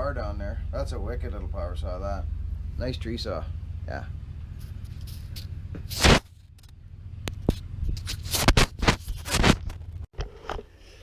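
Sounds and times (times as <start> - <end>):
low hum: 0.0 - 10.1.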